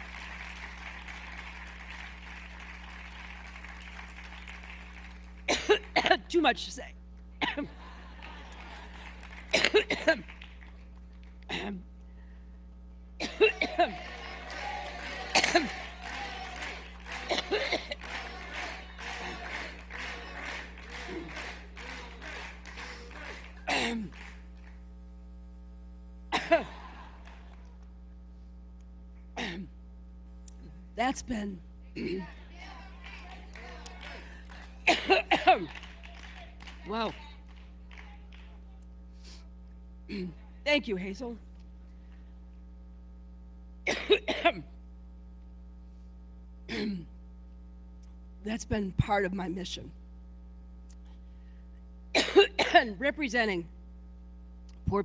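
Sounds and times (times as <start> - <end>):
audience applauding: 0.0 - 6.0, 8.0 - 11.4, 13.4 - 24.8, 26.6 - 27.8, 32.2 - 38.8
electrical hum: 0.0 - 55.0
woman coughing: 5.5 - 6.4, 7.4 - 7.8, 9.5 - 10.3, 11.5 - 11.8, 13.2 - 14.0, 15.2 - 15.9, 17.2 - 18.0, 23.7 - 24.1, 26.3 - 26.8, 29.4 - 29.7, 32.0 - 32.4, 34.8 - 35.8, 40.1 - 40.4, 43.9 - 44.7, 46.7 - 47.1, 52.2 - 53.1.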